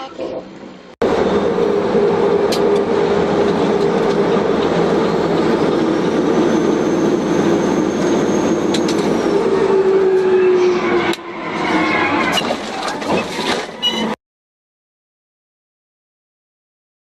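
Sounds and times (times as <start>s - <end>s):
loud rumbling road or rail noise: 0.0s - 14.2s.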